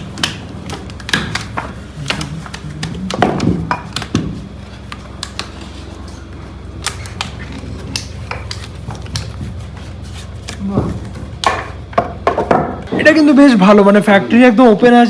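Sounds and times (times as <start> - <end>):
taps and clicks of cricket bats: 0.0 - 5.8, 10.4 - 13.0
low machine hum: 0.0 - 15.0.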